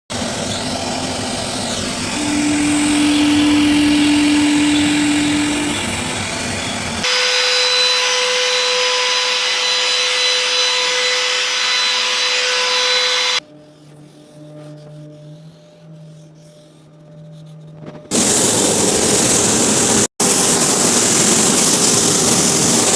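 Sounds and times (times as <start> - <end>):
machine high whine: 0.1 - 22.9
woodworking machine humming: 0.1 - 22.9.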